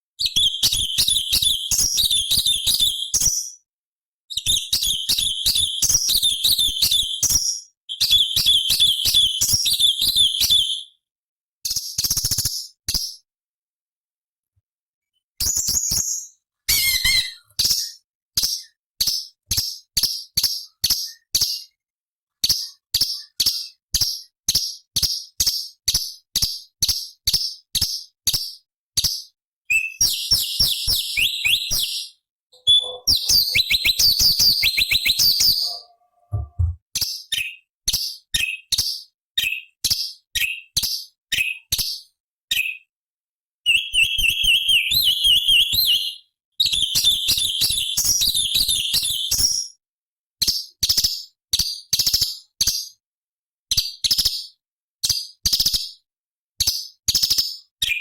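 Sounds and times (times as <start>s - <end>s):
bird chirping and warbling: 15.5s - 18.0s, 29.7s - 36.8s.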